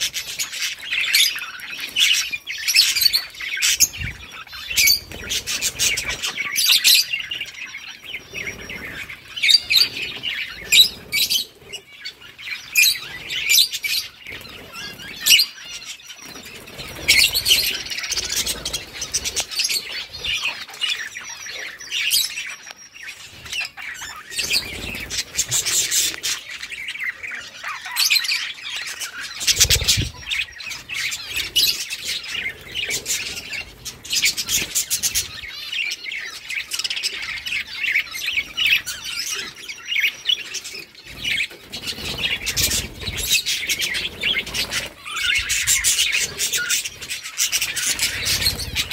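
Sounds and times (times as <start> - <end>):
budgerigars chirping: 0.0 - 48.9.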